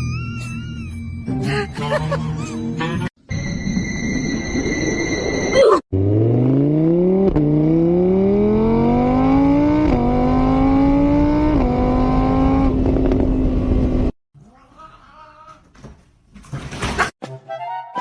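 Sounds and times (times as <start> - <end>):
car engine accelerating: 6.0 - 14.2.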